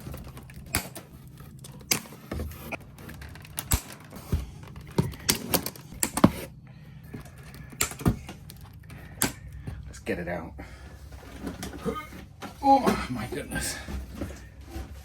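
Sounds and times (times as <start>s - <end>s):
packaging clicks and snaps: 0.0s - 6.6s.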